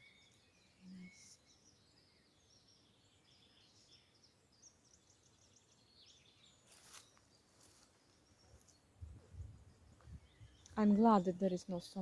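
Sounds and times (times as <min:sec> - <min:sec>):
bird trill: 0:00.0 - 0:07.2
songbirds chirping: 0:00.0 - 0:12.0.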